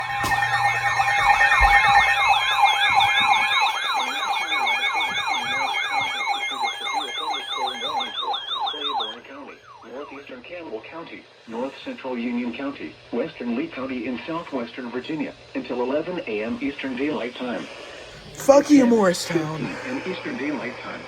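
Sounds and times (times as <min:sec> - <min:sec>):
electronic siren yelping: 0:00.0 - 0:10.3.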